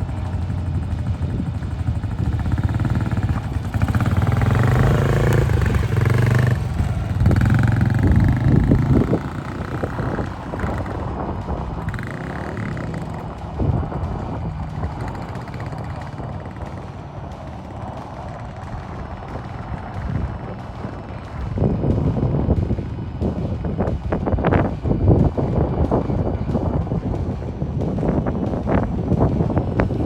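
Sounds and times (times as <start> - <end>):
small motorbike engine revving: 0.0 - 24.0.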